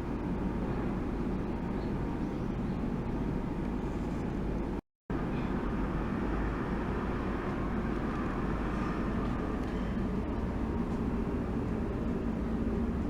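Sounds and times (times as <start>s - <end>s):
pump circulating water: 5.2s - 13.0s.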